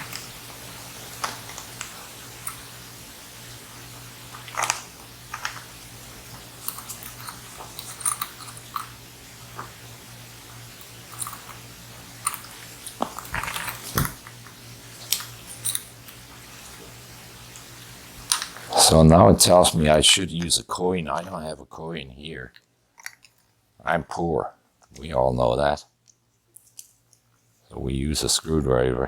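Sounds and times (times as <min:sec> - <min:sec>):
faint steady hum: 0:00.0 - 0:29.0
plastic items clicking and crackling: 0:04.3 - 0:09.8.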